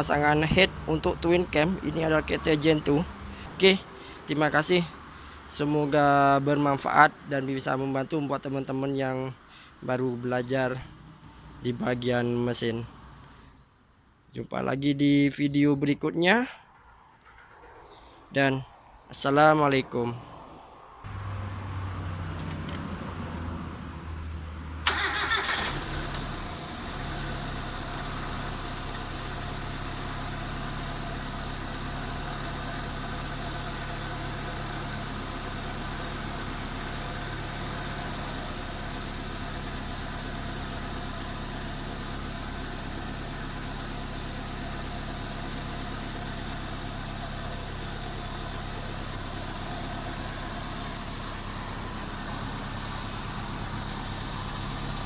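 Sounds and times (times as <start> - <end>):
car engine starting and idling: 0.0 - 6.1, 21.0 - 55.0.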